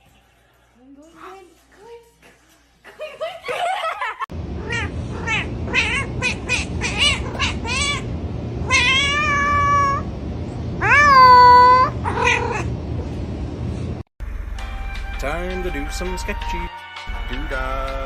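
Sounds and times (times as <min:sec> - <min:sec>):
steady low hum: 0:04.3 - 0:14.6
cat meowing: 0:04.6 - 0:10.1, 0:10.8 - 0:12.7.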